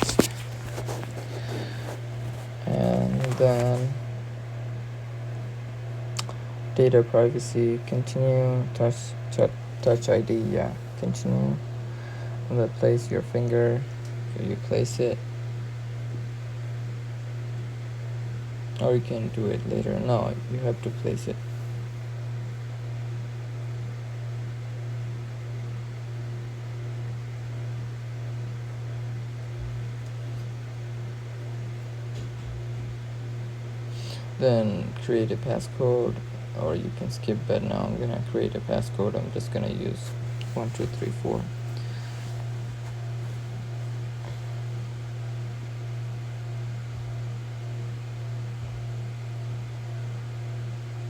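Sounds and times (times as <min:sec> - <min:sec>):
low hum: 0:00.0 - 0:24.9
steady low hum: 0:00.0 - 0:51.0.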